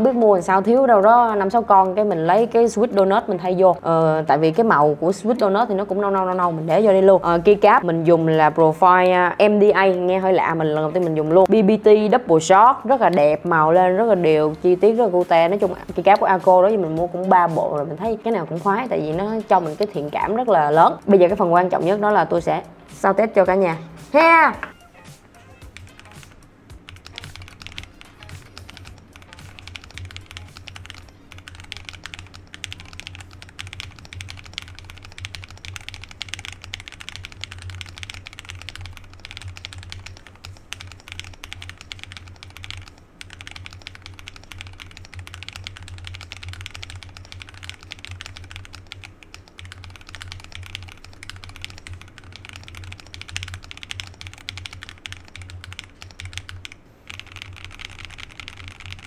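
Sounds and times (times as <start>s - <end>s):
fast mechanical keyboard typing: 0.0s - 11.5s, 12.5s - 22.7s, 25.6s - 59.0s
background music: 0.0s - 34.2s.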